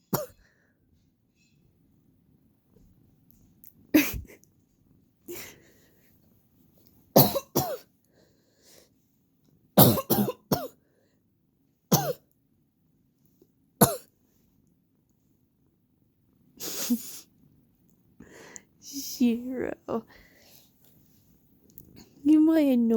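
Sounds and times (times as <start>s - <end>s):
person coughing: 7.2s - 7.8s, 9.8s - 10.8s, 11.9s - 12.2s, 13.8s - 14.1s.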